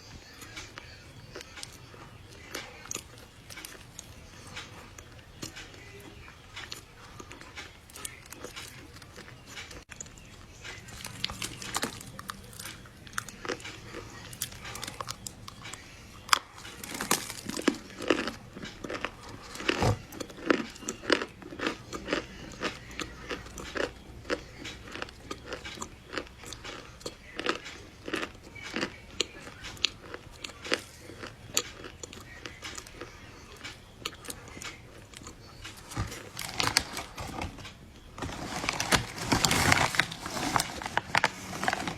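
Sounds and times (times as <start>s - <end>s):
crunchy chewing: 0.2s - 41.9s.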